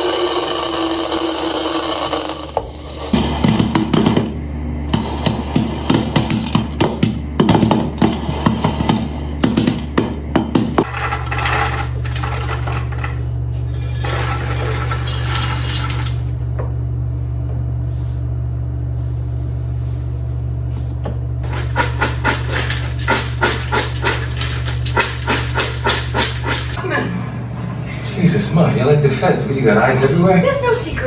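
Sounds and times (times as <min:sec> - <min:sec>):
popcorn kernels popping: 0:00.0 - 0:16.3, 0:21.4 - 0:26.8
microwave oven humming: 0:00.0 - 0:31.0.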